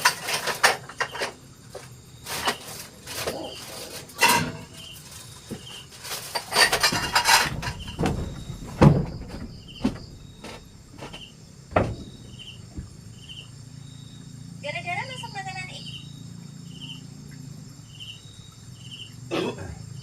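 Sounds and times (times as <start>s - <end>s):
knocks and clatter of handling: 0.0s - 13.0s
faint insect chirps: 0.0s - 20.0s.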